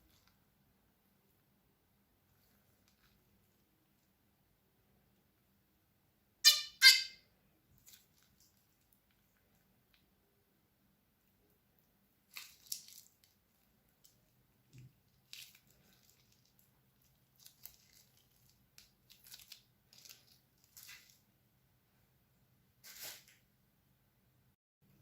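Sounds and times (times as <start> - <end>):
slime crackling and popping: 12.3 - 21.2.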